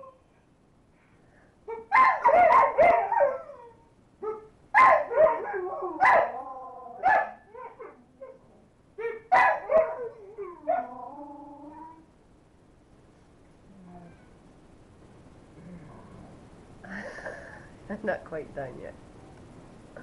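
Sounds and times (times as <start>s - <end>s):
dogs bark-howling: 1.7s - 8.0s, 9.0s - 11.6s.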